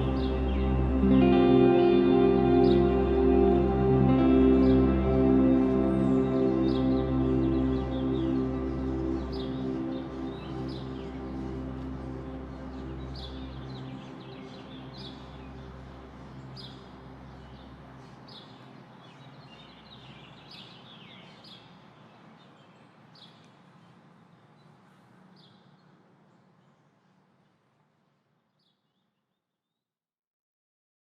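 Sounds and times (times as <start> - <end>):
steady background rush: 0.0 - 20.2
low music tones: 0.0 - 20.3
small birds chirping: 0.0 - 27.5.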